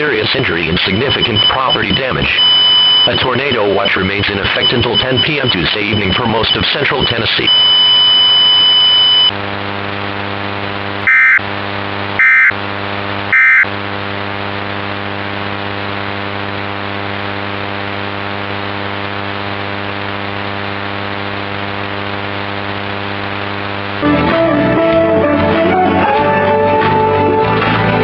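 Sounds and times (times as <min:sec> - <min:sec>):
digital data tone bursts: 0:00.3 - 0:09.3, 0:11.1 - 0:11.4, 0:12.2 - 0:12.6, 0:13.3 - 0:13.7.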